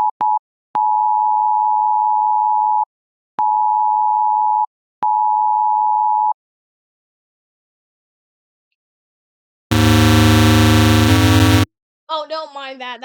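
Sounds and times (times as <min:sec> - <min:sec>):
harsh two-tone alert tone: 0:09.7 - 0:11.7.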